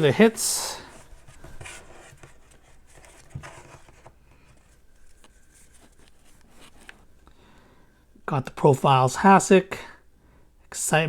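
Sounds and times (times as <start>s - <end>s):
trading cards rustling: 0.0s - 7.2s.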